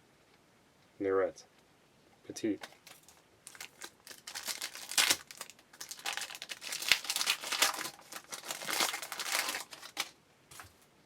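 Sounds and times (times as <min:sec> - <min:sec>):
foil wrapper crinkling and tearing: 0:02.6 - 0:10.7.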